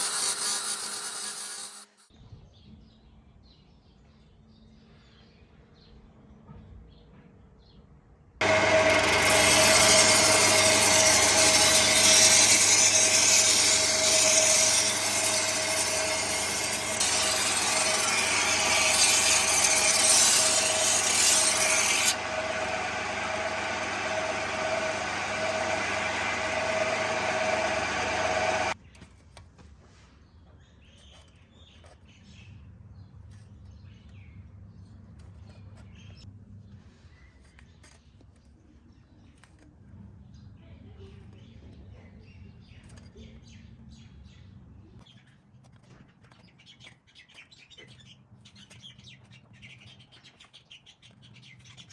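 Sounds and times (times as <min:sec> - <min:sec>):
electric power tool whining: 0:08.4 - 0:28.8.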